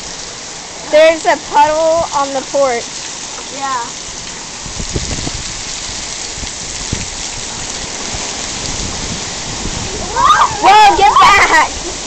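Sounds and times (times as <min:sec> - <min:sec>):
heavy rain drumming: 0:00.0 - 0:12.0
wind on microphone: 0:04.5 - 0:12.0.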